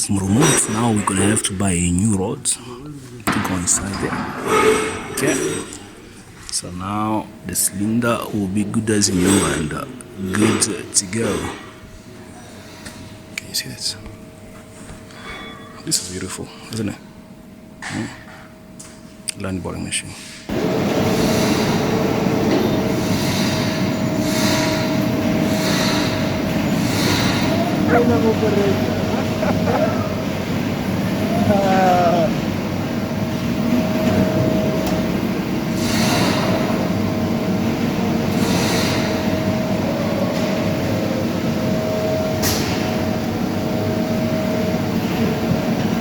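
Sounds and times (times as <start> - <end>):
boring machine grinding: 20.5 - 31.6
machine whine: 20.5 - 46.0.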